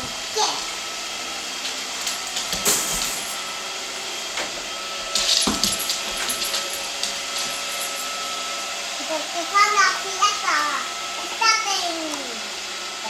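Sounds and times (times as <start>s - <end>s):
robot vacuum whirring: 0.0s - 13.0s.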